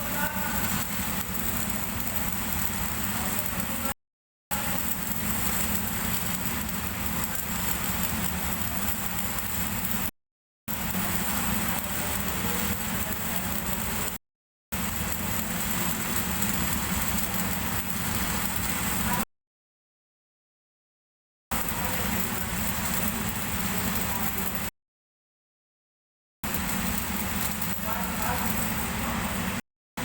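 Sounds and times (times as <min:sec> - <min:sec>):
welding arc crackling: 0:00.0 - 0:10.1, 0:10.7 - 0:19.2, 0:21.5 - 0:24.7, 0:26.4 - 0:29.6.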